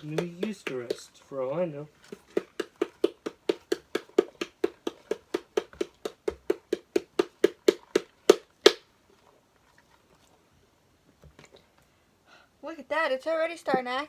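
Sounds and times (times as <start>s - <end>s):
slime being stirred: 0.0s - 1.4s, 2.0s - 10.4s.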